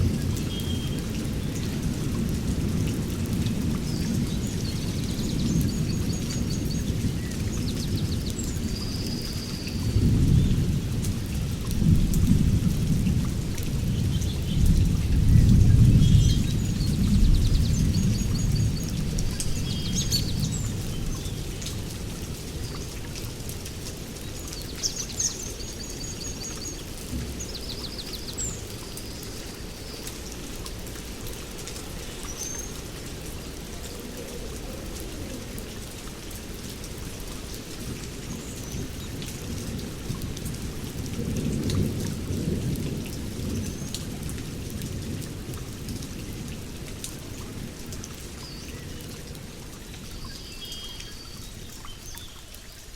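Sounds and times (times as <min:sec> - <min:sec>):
heavy rain in forest: 0:00.0 - 0:52.9
thunder rumbles: 0:09.8 - 0:22.0, 0:38.8 - 0:46.5.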